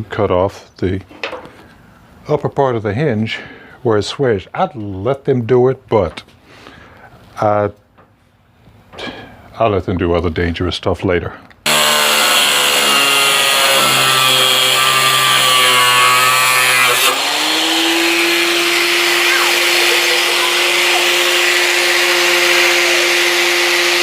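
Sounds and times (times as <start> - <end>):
electric cutting tool whining: 11.7 - 24.0.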